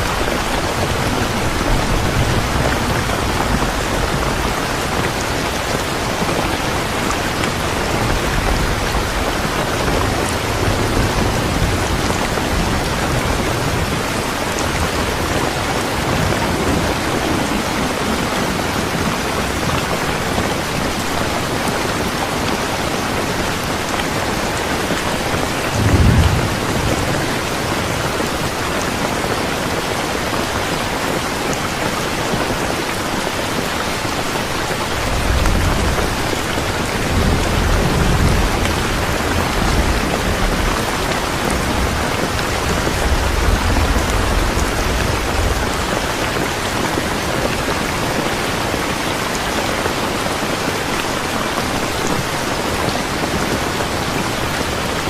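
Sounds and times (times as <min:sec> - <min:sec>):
steady rain falling: 0:00.0 - 0:55.0
thunder rumbling: 0:25.1 - 0:28.6, 0:34.9 - 0:48.0.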